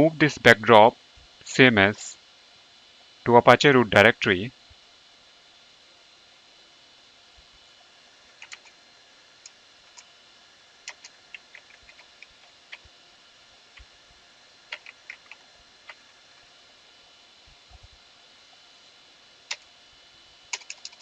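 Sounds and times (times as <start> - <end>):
steady hiss: 0.0 - 21.0
keyboard keys clicking: 8.4 - 8.7, 10.9 - 12.8, 14.7 - 16.0, 20.5 - 21.0.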